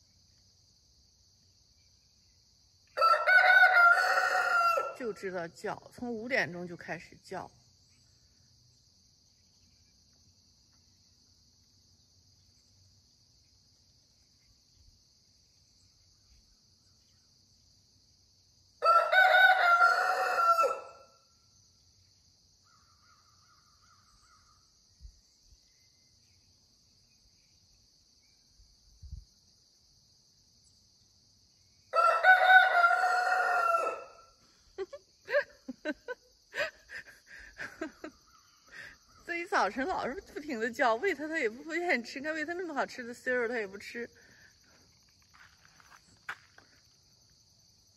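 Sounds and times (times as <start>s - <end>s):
rooster crowing: 3.0s - 5.0s, 18.8s - 21.2s, 31.9s - 34.4s.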